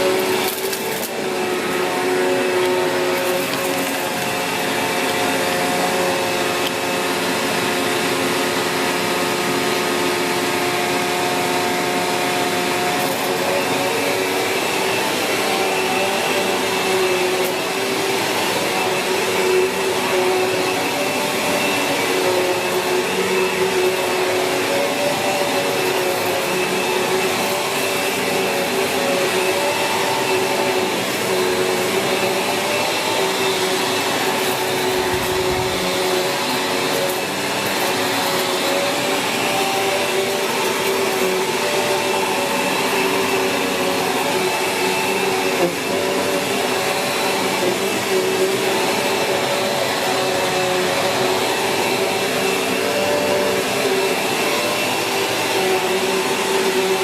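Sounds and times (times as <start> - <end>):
vacuum cleaner motor whine: 0.0 - 57.0.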